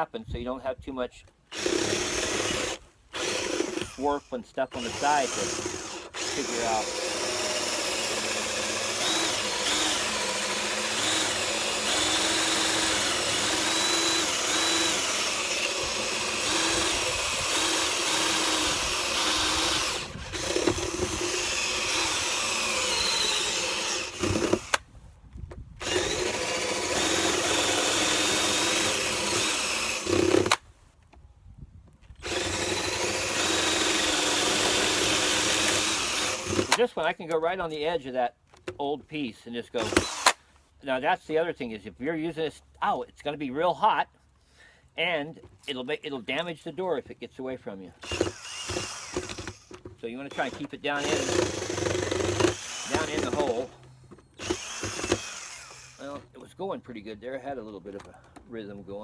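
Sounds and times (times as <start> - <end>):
electric drill boring into wood: 1.5 - 24.8, 25.8 - 30.6, 32.2 - 36.8, 39.8 - 40.4, 48.0 - 56.2.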